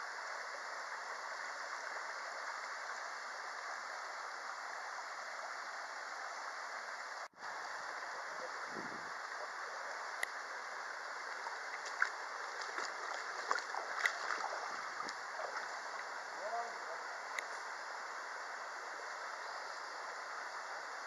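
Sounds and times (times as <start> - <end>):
stream rushing over rocks: 0.0 - 19.4
short ticks and small splashes: 11.3 - 16.1.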